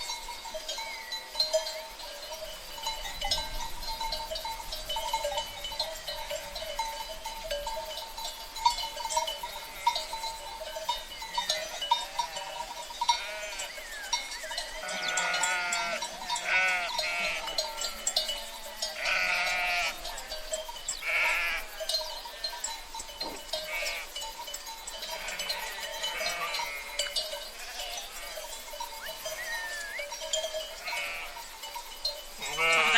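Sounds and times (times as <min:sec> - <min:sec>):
bells jingling on sheep: 0:00.0 - 0:32.9
sheep bleating: 0:09.7 - 0:10.2, 0:11.9 - 0:13.9, 0:14.8 - 0:18.2, 0:18.8 - 0:22.6, 0:23.6 - 0:24.1, 0:25.1 - 0:28.5, 0:30.8 - 0:31.4, 0:32.4 - 0:32.9.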